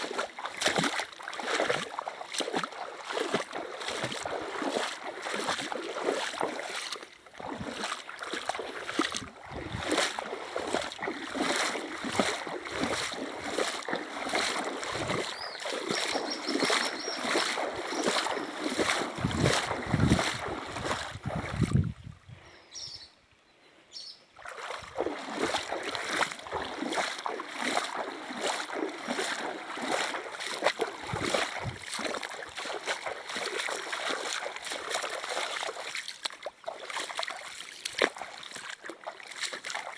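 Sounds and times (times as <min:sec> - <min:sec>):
river water rushing: 0:09.6 - 0:21.0.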